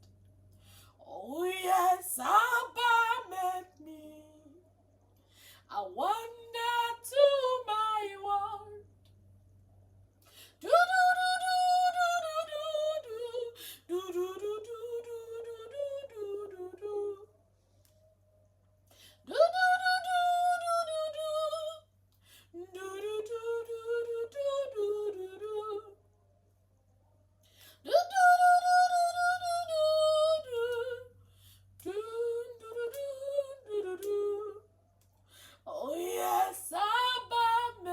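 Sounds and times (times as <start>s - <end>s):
woman singing without words: 0.7s - 4.6s, 5.4s - 8.9s, 10.3s - 17.3s, 18.9s - 26.0s, 27.5s - 34.6s, 35.3s - 37.9s
high solo voice singing: 35.7s - 37.9s.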